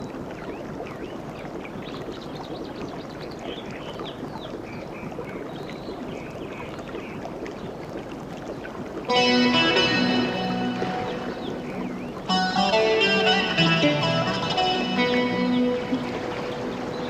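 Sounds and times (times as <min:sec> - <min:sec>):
sea waves washing: 0:09.0 - 0:17.0.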